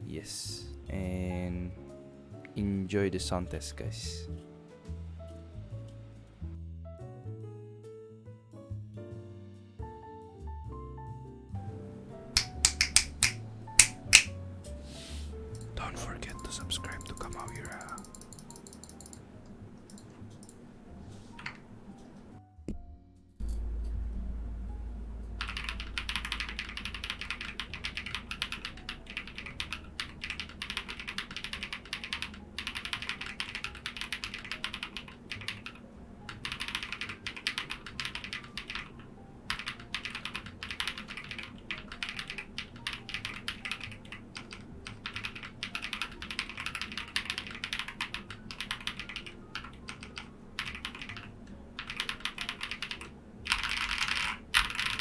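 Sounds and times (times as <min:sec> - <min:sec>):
typing on mechanical keyboard: 0:12.4 - 0:14.3, 0:16.3 - 0:19.2, 0:25.4 - 0:55.0.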